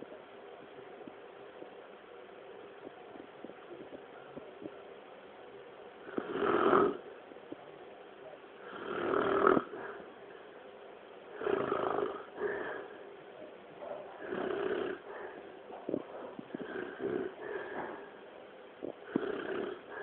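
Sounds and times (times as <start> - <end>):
man snoring: 6.0 - 7.0, 8.6 - 10.0, 11.4 - 12.8, 14.2 - 15.4, 16.5 - 17.7, 18.9 - 20.0.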